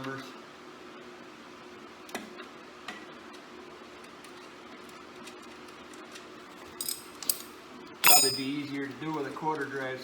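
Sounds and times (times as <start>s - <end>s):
wrench metal clicks: 6.8s - 8.5s.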